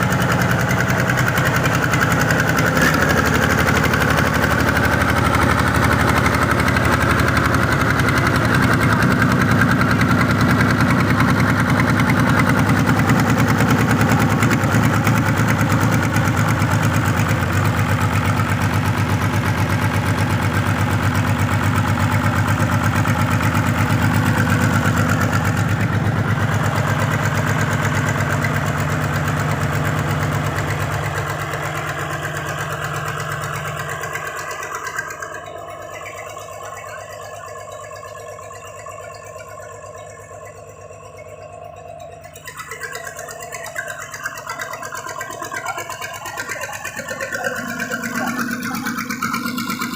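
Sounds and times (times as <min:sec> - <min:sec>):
sawmill engine knocking: 0:00.0 - 0:49.9.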